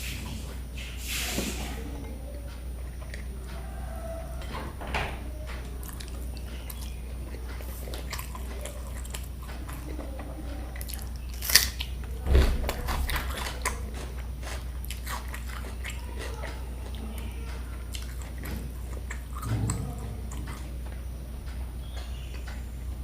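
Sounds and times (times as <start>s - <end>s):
steady low hum: 0.0s - 23.0s
person chewing and crunching food: 2.3s - 23.0s
heavy thump: 12.2s - 13.3s.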